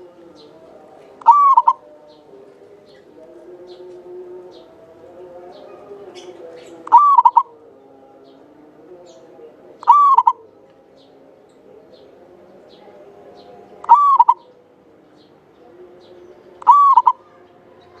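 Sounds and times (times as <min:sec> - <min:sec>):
dove cooing: 0:01.2 - 0:02.0, 0:05.4 - 0:07.7, 0:09.8 - 0:10.5, 0:13.8 - 0:14.5, 0:16.6 - 0:17.4.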